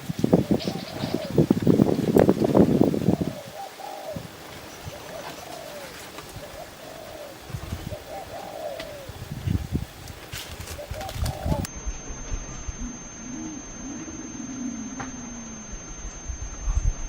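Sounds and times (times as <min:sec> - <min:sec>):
doves cooing: 0:00.0 - 0:11.7.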